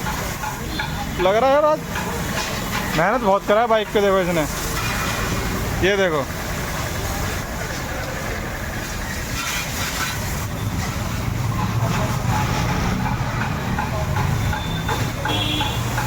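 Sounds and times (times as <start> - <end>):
water spray hissing: 1.8 - 13.0.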